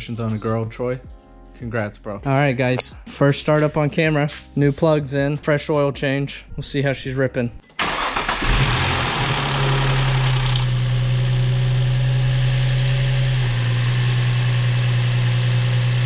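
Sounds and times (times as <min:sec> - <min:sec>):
car engine idling: 0:07.8 - 0:16.0.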